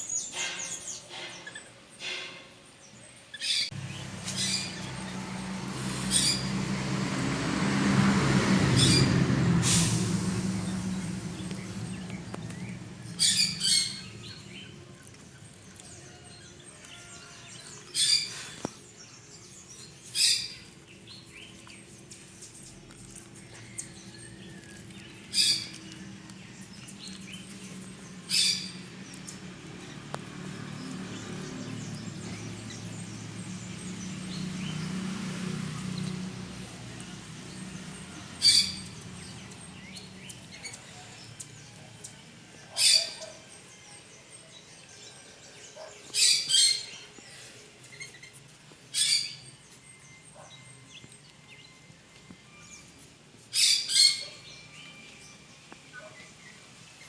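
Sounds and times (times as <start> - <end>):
birds chirping: 0.0 - 51.9
low hum: 3.7 - 15.5.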